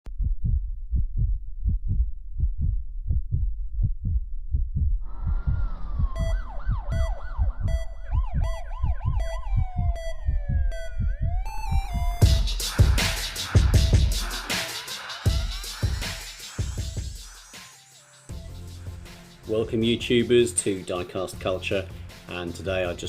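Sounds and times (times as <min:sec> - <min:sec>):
heartbeat-like bass thump: 0:00.1 - 0:14.3
wailing siren-like electronic tones: 0:05.0 - 0:12.4.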